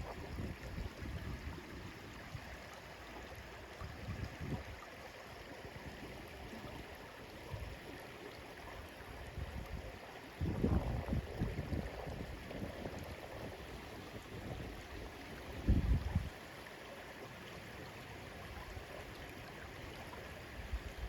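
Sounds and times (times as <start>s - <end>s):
flowing water: 0.0s - 21.0s
wind buffeting microphone: 3.9s - 4.8s, 9.4s - 14.9s, 15.5s - 16.4s.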